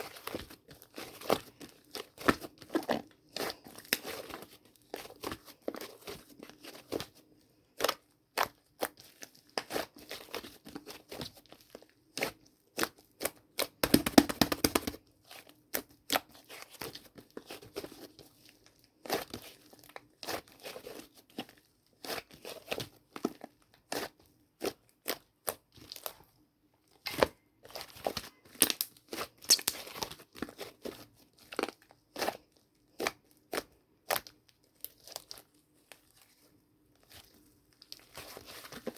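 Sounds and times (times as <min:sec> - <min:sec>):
slime squeezed and torn by hand: 0:29.4 - 0:30.0.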